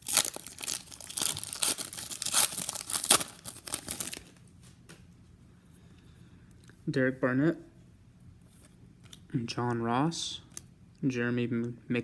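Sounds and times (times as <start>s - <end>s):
plastic wrapper tearing and crinkling: 0.0s - 4.4s.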